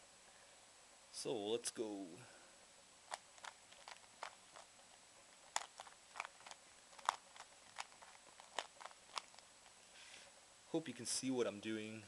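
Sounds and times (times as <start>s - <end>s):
rubik's cube clicking: 5.5s - 9.4s.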